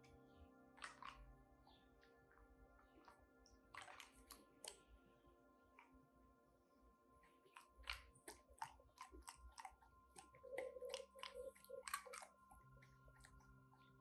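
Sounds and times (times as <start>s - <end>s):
dog crunching ice cubes: 7.5s - 13.5s.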